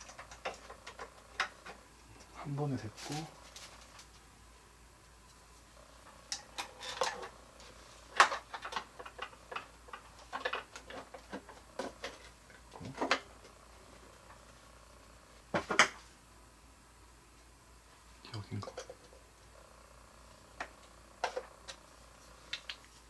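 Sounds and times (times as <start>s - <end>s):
clicks and knocks of plastic parts: 0.0s - 2.3s, 8.1s - 13.6s.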